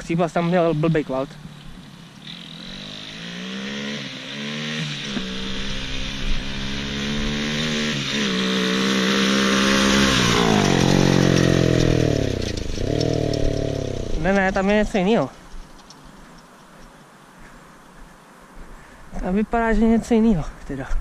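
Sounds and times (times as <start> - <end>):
dirt bike engine revving: 1.4 - 15.3.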